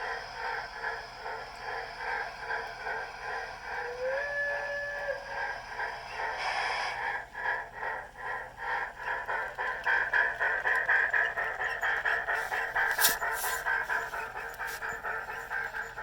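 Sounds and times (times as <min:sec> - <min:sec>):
steam exhaust chuffs: 0:00.0 - 0:16.0
steam hiss: 0:00.0 - 0:16.0
model train whistle: 0:03.8 - 0:05.6.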